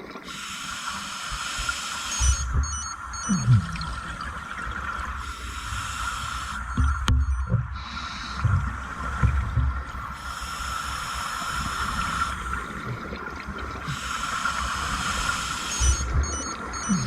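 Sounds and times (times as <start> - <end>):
exhaled bubbles rushing: 2.3 - 5.2.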